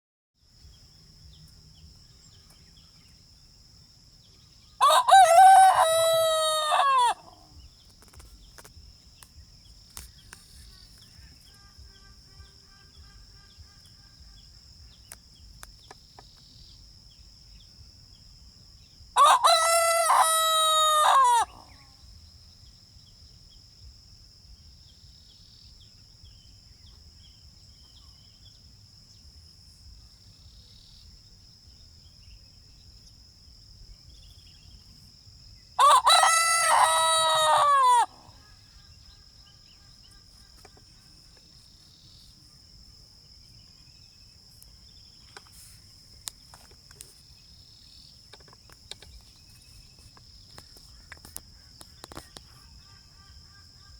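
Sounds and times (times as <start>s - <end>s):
rooster crowing: 4.8s - 7.4s, 19.2s - 21.8s, 35.8s - 38.4s.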